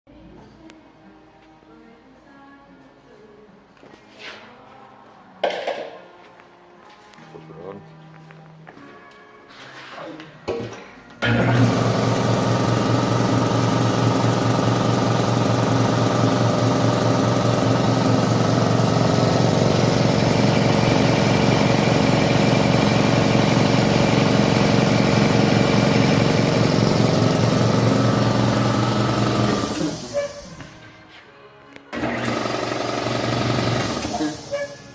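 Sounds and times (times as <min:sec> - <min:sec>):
air compressor running: 0:11.2 - 0:30.8, 0:31.9 - 0:34.9.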